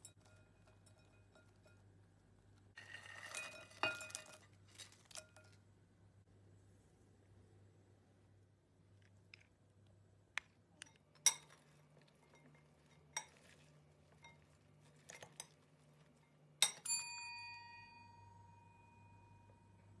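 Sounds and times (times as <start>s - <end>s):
cutlery clinking on dishes: 11.2s - 13.5s, 16.6s - 17.2s.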